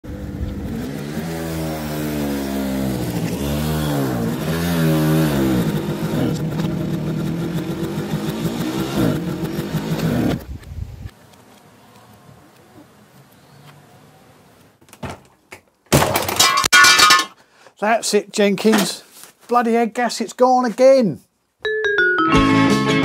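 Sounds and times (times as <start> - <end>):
motorcycle engine revving: 0.1 - 10.6.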